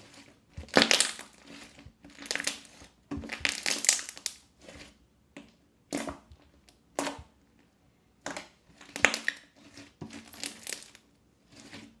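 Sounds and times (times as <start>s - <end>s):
slime crackling and popping: 0.6s - 1.4s, 2.2s - 4.4s, 8.8s - 9.5s, 10.2s - 11.0s.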